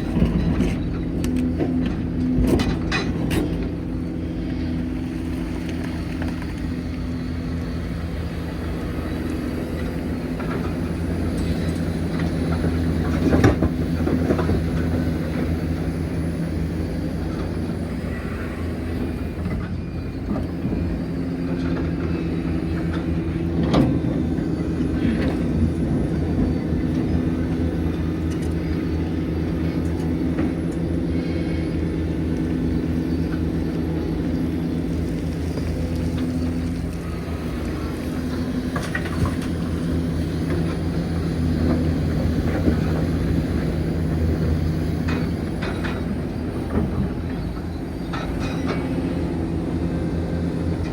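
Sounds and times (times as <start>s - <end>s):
excavator diesel engine running: 0.0s - 50.9s.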